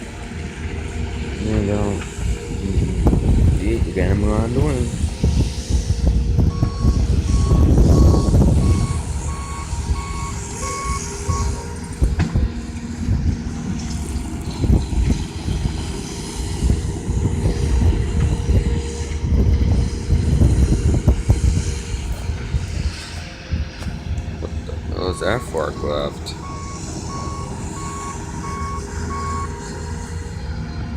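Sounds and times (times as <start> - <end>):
heavy vehicle engines rumbling: 0.0 - 30.9
vehicle backup alarm beeping: 6.4 - 12.0, 24.8 - 30.0.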